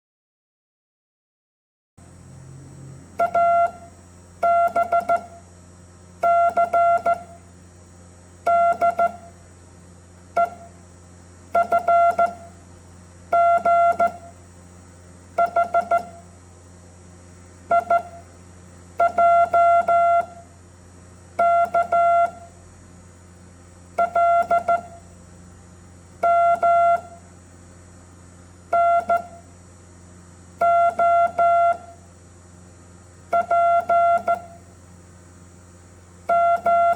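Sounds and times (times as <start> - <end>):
low background hum: 2.0 - 36.9
morse code beeps: 3.2 - 5.4, 6.2 - 7.3, 8.5 - 9.2, 11.6 - 12.4, 13.4 - 14.2, 15.4 - 16.2, 17.7 - 18.2, 21.4 - 22.4, 24.0 - 25.0, 26.2 - 27.1, 28.7 - 29.4, 30.6 - 31.9, 33.3 - 34.6, 36.3 - 36.9.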